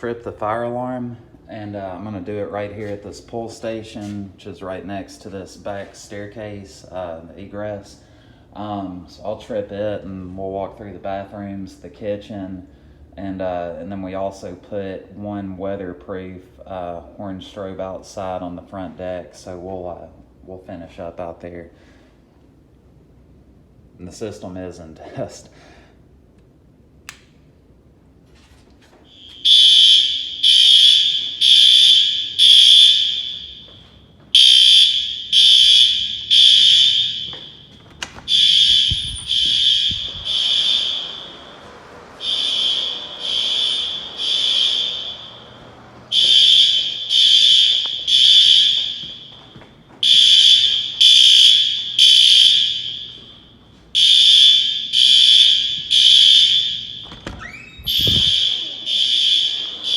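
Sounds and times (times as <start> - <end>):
fire alarm horn blasts: 29.0 - 59.9.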